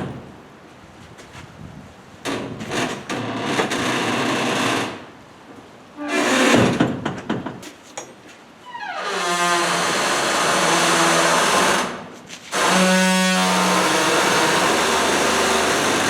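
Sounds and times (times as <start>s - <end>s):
metal door scraping and creaking: 2.3s - 5.0s, 6.0s - 7.1s, 8.6s - 16.0s.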